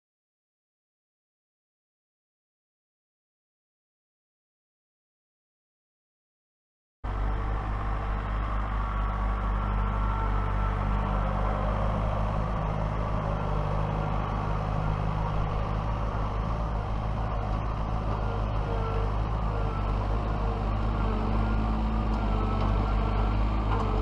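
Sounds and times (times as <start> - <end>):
tractor engine running: 7.1 - 24.0.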